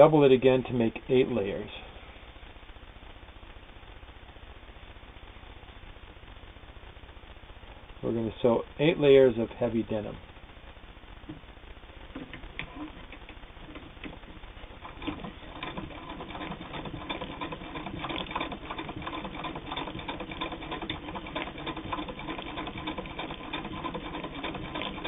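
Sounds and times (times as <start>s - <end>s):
sewing machine clicking: 12.6s - 25.0s.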